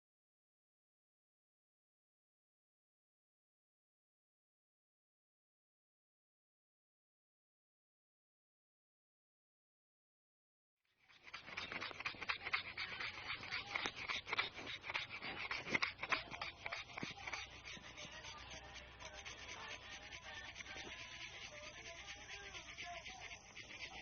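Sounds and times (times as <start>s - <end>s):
hand tool scraping and rubbing: 11.0s - 24.0s.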